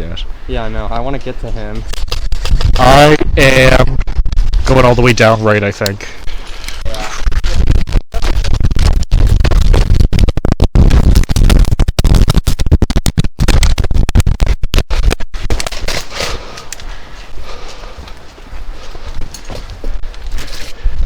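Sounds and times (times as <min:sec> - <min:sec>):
wind buffeting microphone: 0:00.0 - 0:05.2.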